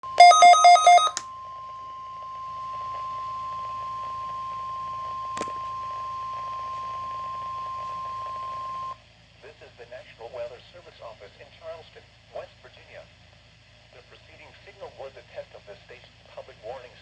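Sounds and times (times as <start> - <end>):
steady single-pitch alert tone: 0.0 - 1.2
loud beeps: 0.1 - 1.2.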